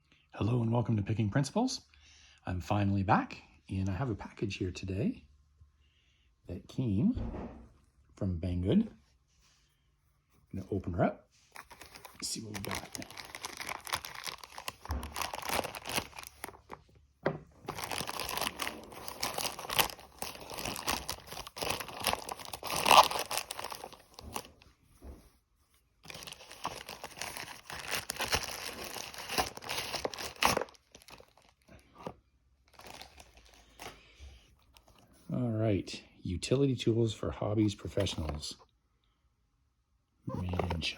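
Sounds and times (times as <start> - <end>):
faint handling noises: 9.1 - 35.8, 40.3 - 40.9
wrapping crinkling and tearing: 11.5 - 16.8, 17.6 - 24.6, 26.0 - 34.0.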